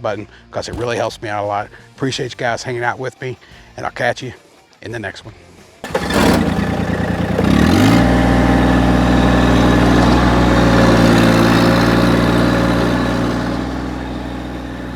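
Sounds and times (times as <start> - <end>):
diesel tractor engine starting: 5.8 - 14.9.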